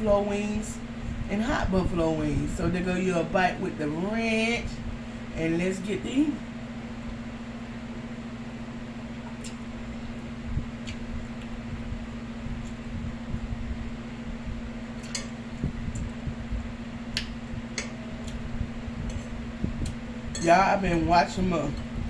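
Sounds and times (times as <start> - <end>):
low electrical hum: 0.0 - 22.0
soft chewing: 9.1 - 13.0, 17.1 - 18.5.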